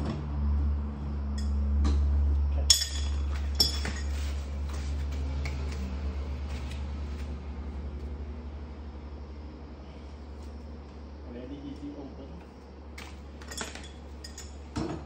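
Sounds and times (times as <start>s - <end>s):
steady low hum: 0.0s - 15.0s
sharp metallic clinks: 2.7s - 4.2s, 13.4s - 14.6s.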